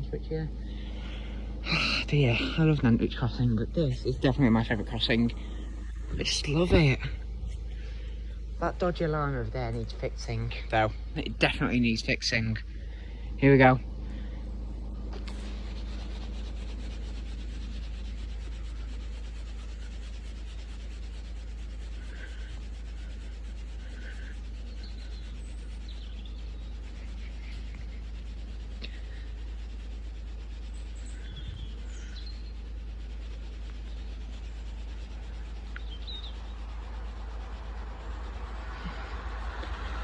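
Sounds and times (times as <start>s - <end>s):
low outdoor rumble: 0.0s - 40.0s
short bird chirps: 35.8s - 36.6s.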